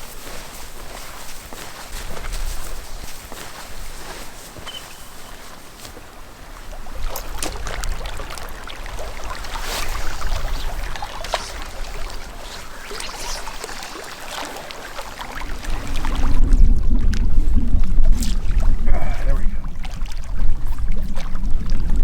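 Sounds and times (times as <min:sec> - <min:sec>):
lake water splashing: 0:00.0 - 0:22.0
wind buffeting microphone: 0:05.3 - 0:22.0.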